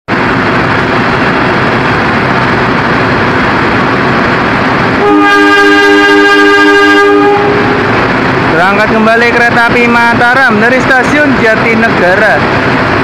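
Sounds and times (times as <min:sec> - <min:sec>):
steady rushing noise: 0:00.1 - 0:13.0
locomotive air horn blast: 0:05.0 - 0:08.1.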